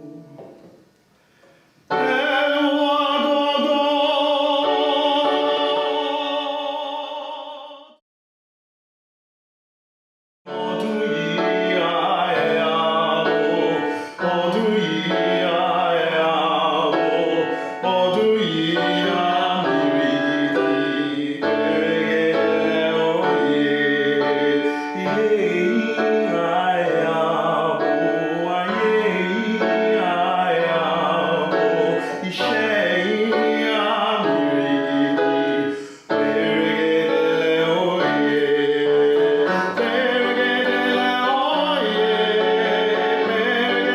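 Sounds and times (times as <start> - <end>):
classical singing with vibrato: 0.0 - 0.9, 1.7 - 8.0, 10.5 - 43.9
sustained piano chords: 0.0 - 0.9, 1.9 - 7.6, 10.5 - 43.9
singer breathing: 1.1 - 1.9, 35.7 - 36.1.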